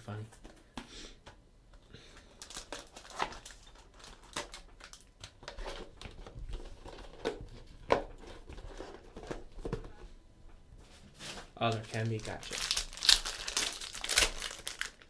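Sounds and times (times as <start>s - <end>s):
card pack wrapper tearing and crinkling: 2.2s - 7.4s, 11.6s - 15.0s.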